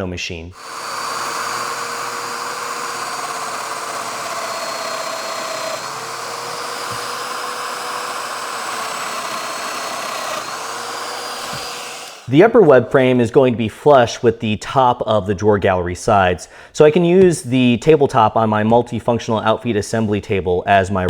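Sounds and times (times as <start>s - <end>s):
joiner motor whine: 0.6s - 12.3s.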